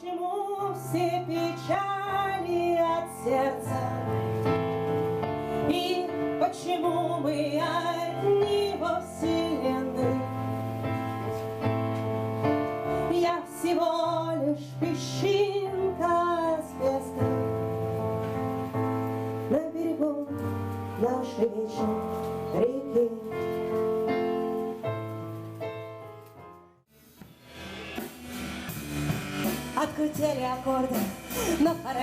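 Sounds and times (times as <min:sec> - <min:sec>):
woman singing: 0:00.0 - 0:04.3, 0:05.6 - 0:10.6, 0:13.0 - 0:17.7, 0:19.4 - 0:23.7, 0:29.8 - 0:32.0
instrumental accompaniment: 0:00.4 - 0:32.0.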